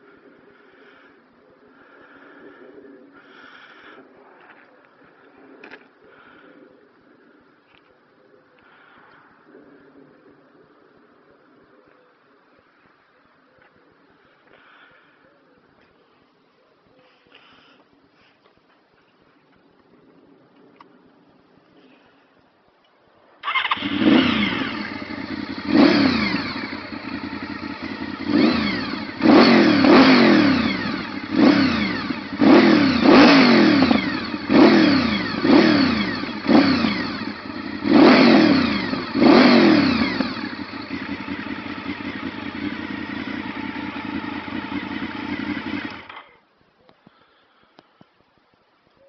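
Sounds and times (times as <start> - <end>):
motorcycle engine revving: 23.4 - 46.4
motorcycle engine idling: 23.4 - 46.5.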